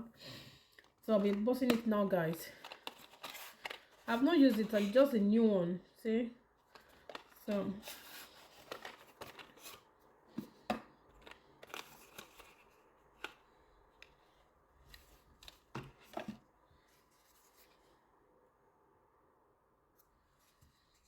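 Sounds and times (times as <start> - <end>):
packaging being handled and opened: 0.8 - 5.1, 6.6 - 17.9.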